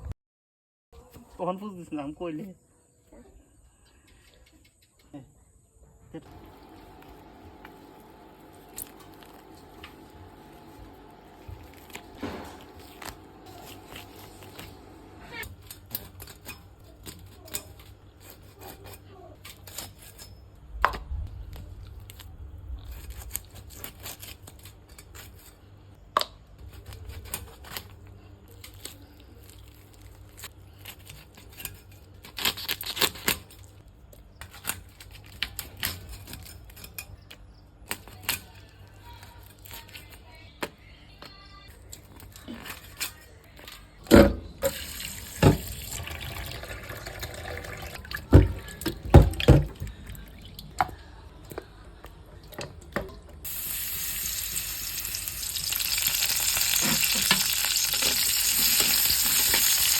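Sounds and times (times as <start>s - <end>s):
steady hum: 6.3s - 15.4s
utensils clicking and scraping: 6.3s - 20.5s, 55.6s - 59.9s.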